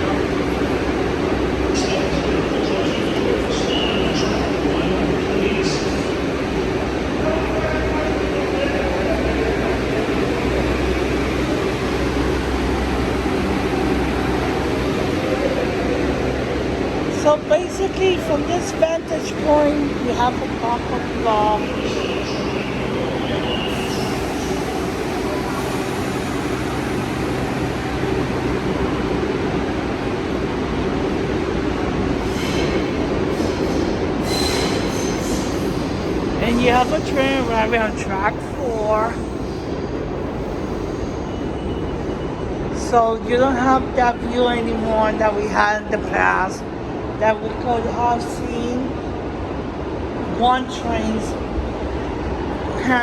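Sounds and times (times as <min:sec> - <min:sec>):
low rumble and hum: 0:07.6 - 0:34.2
high-pitched wheel squeal: 0:34.2 - 0:35.8.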